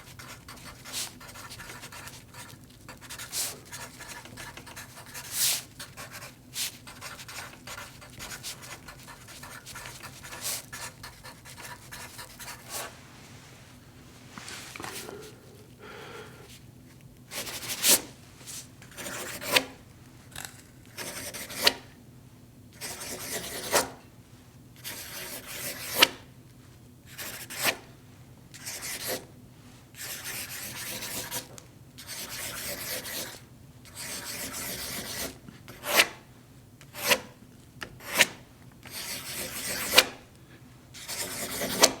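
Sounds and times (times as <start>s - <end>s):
pen scratching on paper: 0.0s - 12.9s, 21.0s - 21.7s, 30.0s - 31.4s, 32.0s - 33.4s, 34.0s - 36.0s, 38.9s - 40.0s, 41.0s - 41.9s.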